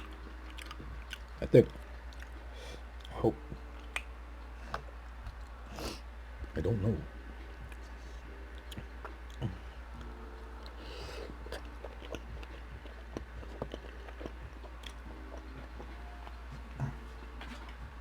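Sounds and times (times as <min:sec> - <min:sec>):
chewing with mouth clicks: 0:00.0 - 0:05.6, 0:07.6 - 0:18.0
steady low hum: 0:00.0 - 0:18.0
breath: 0:02.5 - 0:02.9.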